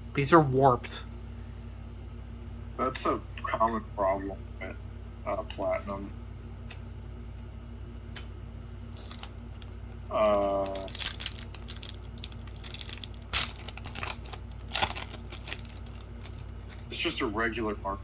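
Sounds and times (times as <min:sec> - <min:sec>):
trading card wrapper crinkling: 0:08.8 - 0:16.9.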